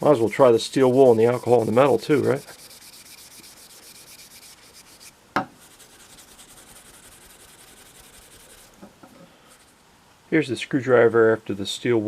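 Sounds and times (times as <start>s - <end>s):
steel wool scrubbing metal: 0.0s - 8.8s.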